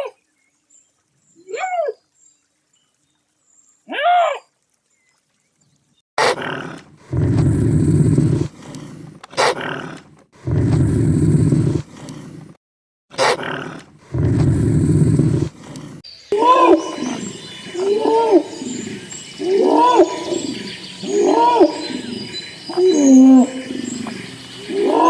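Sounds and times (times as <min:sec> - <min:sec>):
large animal roaring: 0:06.4 - 0:12.4, 0:13.4 - 0:25.0.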